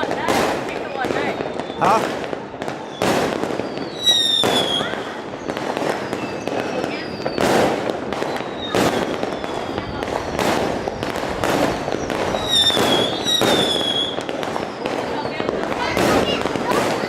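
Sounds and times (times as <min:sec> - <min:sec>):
fireworks bangs and crackles: 0:00.0 - 0:17.0
fireworks whistles falling in pitch: 0:00.8 - 0:17.0.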